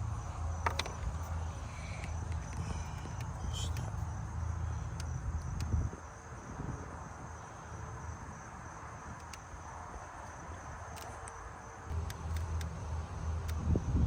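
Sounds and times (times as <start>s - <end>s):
crickets trilling: 0.0s - 14.0s
faint clicks: 9.2s - 9.5s.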